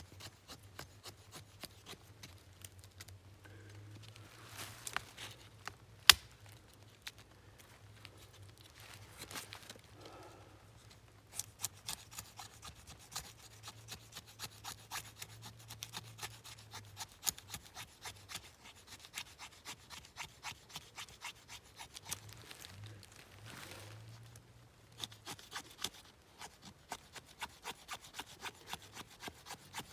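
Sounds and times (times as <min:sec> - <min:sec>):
hand tool rasping on wood: 0:00.0 - 0:02.0, 0:11.4 - 0:22.2, 0:25.0 - 0:29.9.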